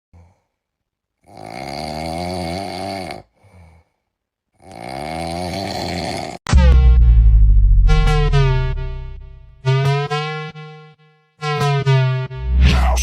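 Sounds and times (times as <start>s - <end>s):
person snoring: 1.2s - 4.0s, 4.6s - 6.5s
faint breath: 3.3s - 4.2s
loud music: 6.5s - 13.0s.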